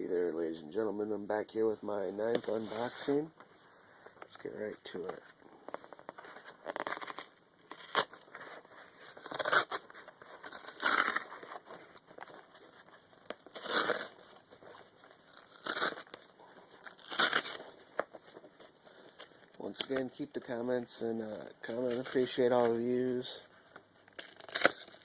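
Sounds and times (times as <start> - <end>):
package ripping and crinkling: 5.8 - 18.4, 24.0 - 25.0.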